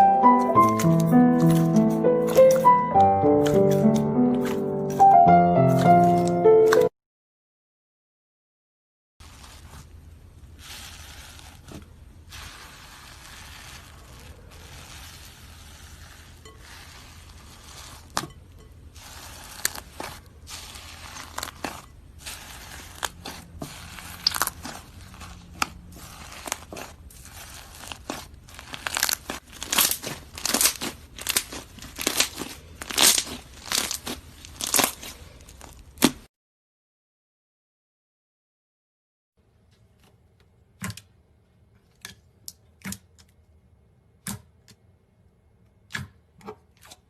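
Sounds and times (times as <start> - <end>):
slime squishing with sticky crackles: 9.2 - 36.3.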